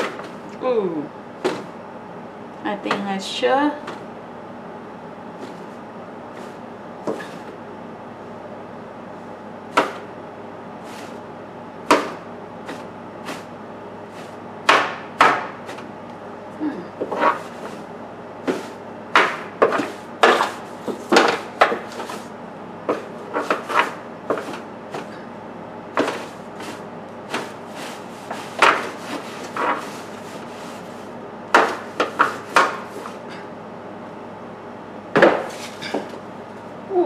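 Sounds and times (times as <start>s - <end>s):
hard objects knocking and scraping: 18.5s - 22.3s, 26.0s - 30.9s, 31.5s - 33.2s.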